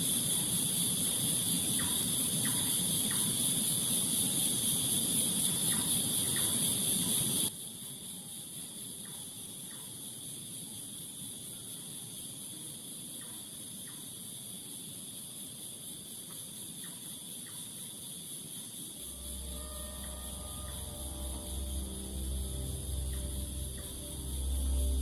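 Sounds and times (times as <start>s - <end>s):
crickets chirring: 0.0s - 25.0s
low hum: 19.0s - 25.0s
music: 19.0s - 25.0s.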